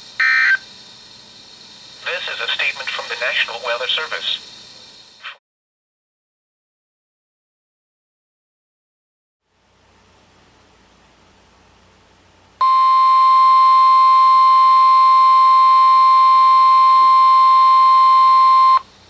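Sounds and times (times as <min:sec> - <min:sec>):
faint radio hiss: 0:00.0 - 0:05.4
loud high warning beep: 0:00.2 - 0:00.7, 0:12.6 - 0:18.9.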